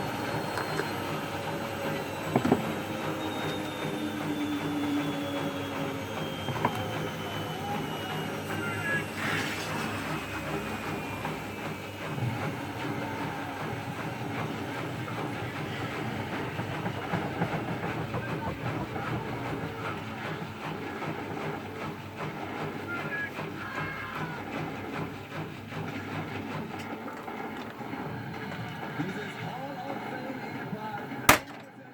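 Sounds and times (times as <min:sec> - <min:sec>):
washing machine drum rumbling: 0:00.0 - 0:29.6, 0:30.6 - 0:31.9
small rapid knocks: 0:13.7 - 0:22.7.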